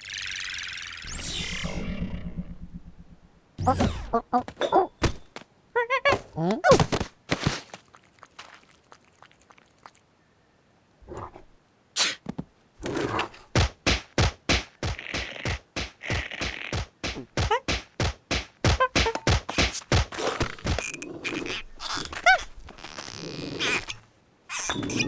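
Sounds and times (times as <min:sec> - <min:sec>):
cartoon thunks: 0:01.1 - 0:05.4, 0:11.0 - 0:22.9.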